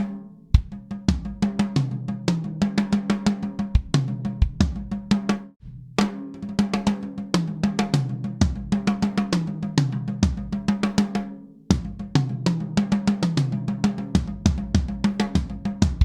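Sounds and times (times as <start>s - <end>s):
drum kit playing a groove: 0.0s - 5.4s, 11.7s - 16.0s.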